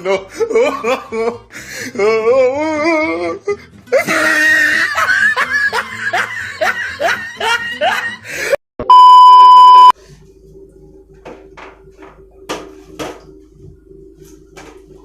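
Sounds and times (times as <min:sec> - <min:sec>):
rhythmic laughter: 0:00.0 - 0:08.6
censor beep: 0:08.8 - 0:10.0
low hum: 0:08.9 - 0:15.0.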